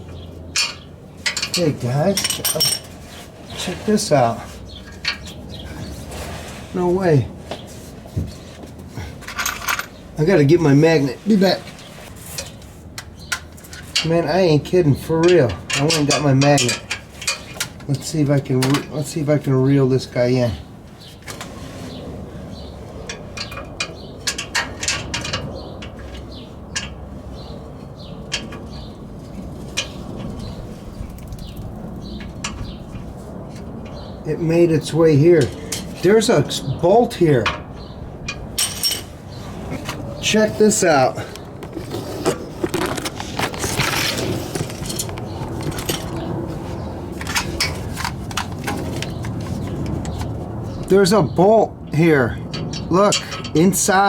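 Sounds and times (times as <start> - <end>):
birds chirping: 0.0 - 54.0.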